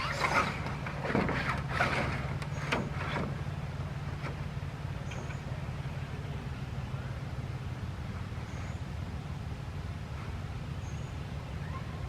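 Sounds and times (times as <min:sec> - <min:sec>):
short knocks and scrapes: 0:00.0 - 0:03.4
low mechanical hum: 0:00.0 - 0:12.0.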